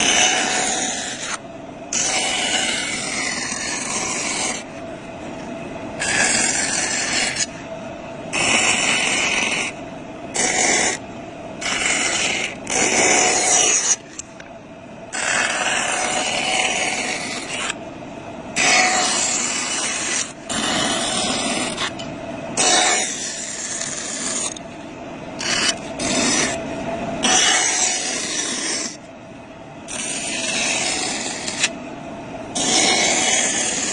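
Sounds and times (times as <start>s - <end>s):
blade rasping into metal: 0.0s - 4.7s, 6.0s - 7.6s, 8.4s - 9.8s, 10.4s - 11.0s, 11.6s - 14.2s, 15.2s - 17.8s, 18.6s - 22.0s, 22.6s - 24.6s, 25.4s - 26.6s, 27.2s - 29.0s, 29.9s - 31.8s, 32.6s - 33.9s.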